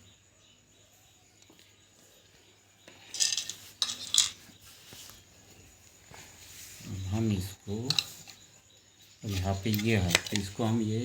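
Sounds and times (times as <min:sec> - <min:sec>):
small parts and tools clattering: 0:02.8 - 0:11.0.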